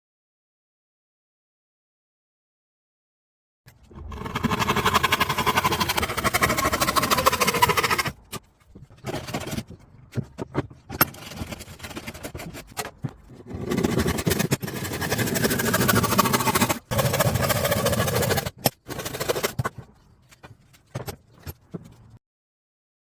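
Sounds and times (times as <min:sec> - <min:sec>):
knocks and clicks of wood: 0:08.3 - 0:11.5.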